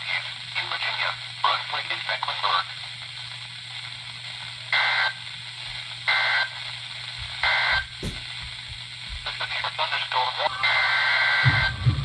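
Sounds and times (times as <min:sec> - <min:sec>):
radio hiss and hum: 0:00.0 - 0:11.7.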